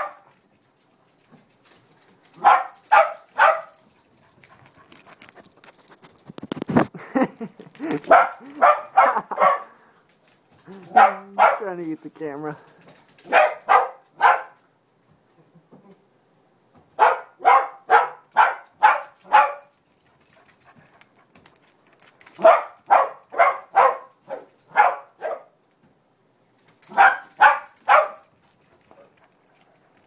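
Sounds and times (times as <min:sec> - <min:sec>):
small dog barking: 0:00.0 - 0:00.3, 0:02.4 - 0:03.8, 0:08.0 - 0:09.8, 0:10.8 - 0:11.7, 0:13.2 - 0:14.6, 0:17.0 - 0:19.7, 0:22.4 - 0:25.5, 0:26.9 - 0:28.3.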